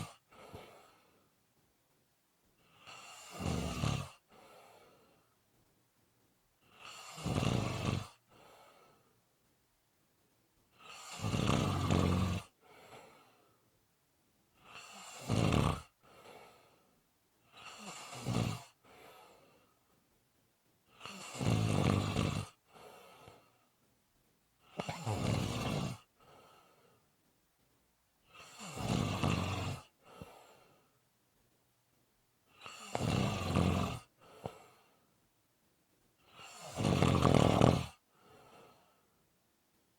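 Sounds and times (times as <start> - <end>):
loud snoring: 0.0 - 0.7, 2.7 - 4.3, 6.7 - 8.2, 10.8 - 12.6, 14.6 - 16.0, 17.5 - 18.8, 20.9 - 22.6, 24.6 - 26.1, 28.3 - 30.0, 32.6 - 34.1, 36.2 - 38.0
soft out-breath: 0.3 - 1.4, 4.3 - 5.4, 8.3 - 9.2, 12.6 - 13.7, 16.0 - 17.0, 18.8 - 19.9, 22.7 - 23.7, 26.2 - 27.1, 30.0 - 31.0, 34.2 - 35.1, 38.1 - 39.2.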